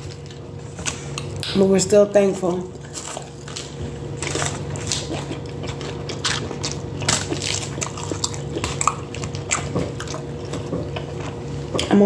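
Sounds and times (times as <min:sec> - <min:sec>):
steady low hum: 0:00.0 - 0:12.0
chewing a burger: 0:02.7 - 0:12.0.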